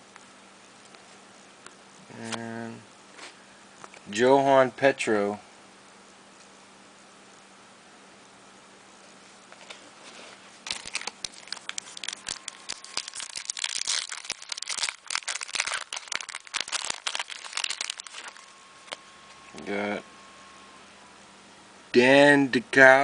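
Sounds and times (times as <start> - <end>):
wrapper tearing and crinkling: 10.6 - 19.0.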